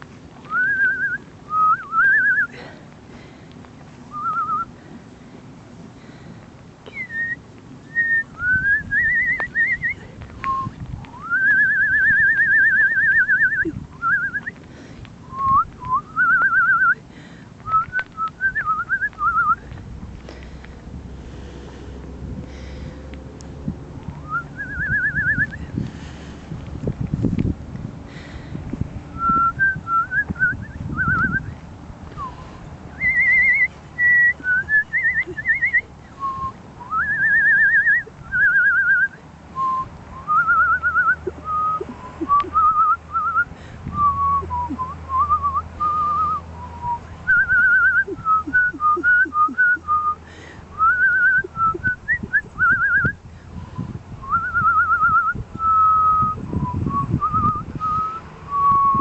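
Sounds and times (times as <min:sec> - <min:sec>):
person whistling: 0:00.4 - 0:02.6, 0:04.1 - 0:04.7, 0:06.9 - 0:14.6, 0:15.2 - 0:17.0, 0:17.6 - 0:19.6, 0:24.2 - 0:25.7, 0:29.2 - 0:31.5, 0:32.2 - 0:50.2, 0:50.8 - 0:53.2, 0:54.2 - 0:59.0.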